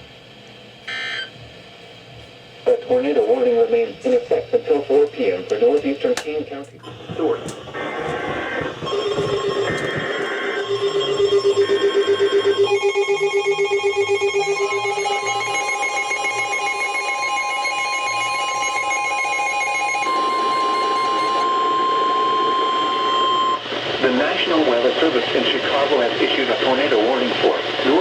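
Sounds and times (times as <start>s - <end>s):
rapidly pulsing alarm tone: 0.9s - 1.4s, 7.7s - 24.2s.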